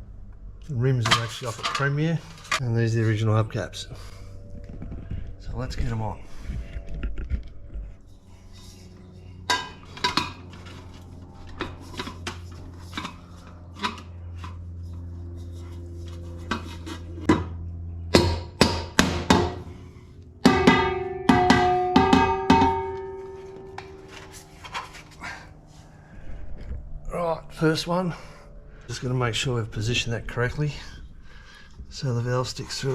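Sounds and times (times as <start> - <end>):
metal hubcap knocks and clanks: 18.1 - 19.7, 20.4 - 24.4.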